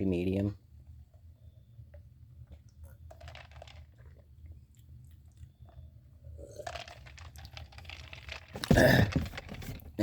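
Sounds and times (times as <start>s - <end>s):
clicks and handling rustle: 6.7s - 10.0s.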